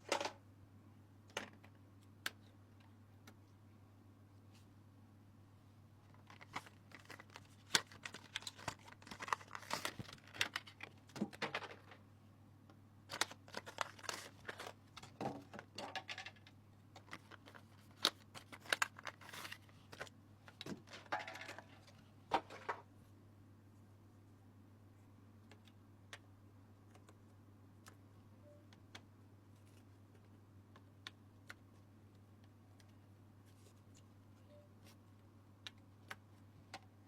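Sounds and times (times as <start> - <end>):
packaging crinkling and rustling: 6.0 - 12.0, 13.1 - 16.2, 17.0 - 20.1.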